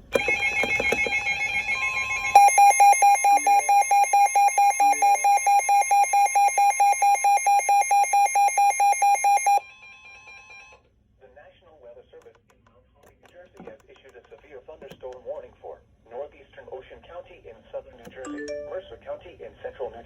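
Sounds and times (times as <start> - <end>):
pulsing electronic alarm beeps: 0.2 - 9.6.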